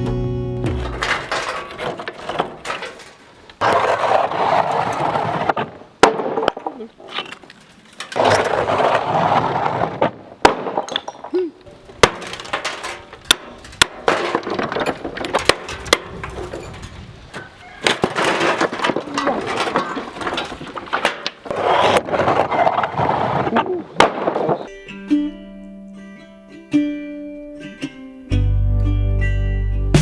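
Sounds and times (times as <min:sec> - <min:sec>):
debris clattering: 0:00.7 - 0:24.7.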